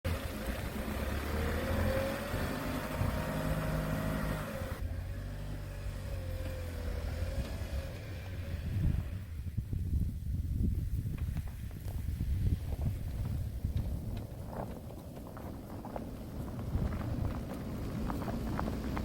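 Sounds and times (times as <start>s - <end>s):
log splitter engine and pump running: 0.1s - 8.8s.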